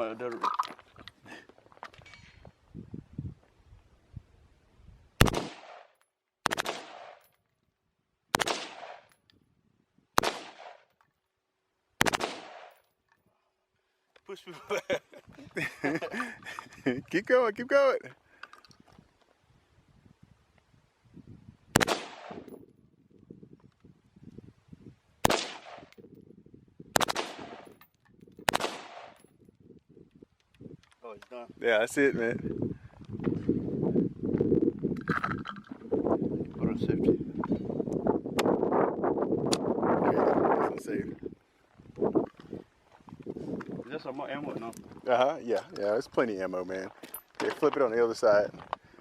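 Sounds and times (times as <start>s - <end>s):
gunshot bursts with echo: 5.2s - 7.2s, 8.3s - 9.1s, 10.2s - 10.8s, 12.0s - 12.7s, 21.8s - 22.5s, 25.2s - 25.9s, 27.0s - 27.6s, 28.5s - 29.2s.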